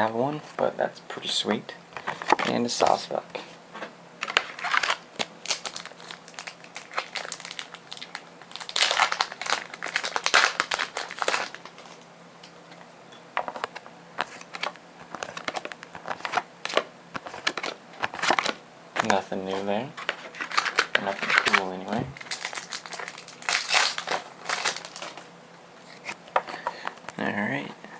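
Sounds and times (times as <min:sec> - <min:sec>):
foil wrapper crinkling and tearing: 0:04.2 - 0:12.0, 0:14.2 - 0:25.2
cards rustling and clicking: 0:13.4 - 0:25.3.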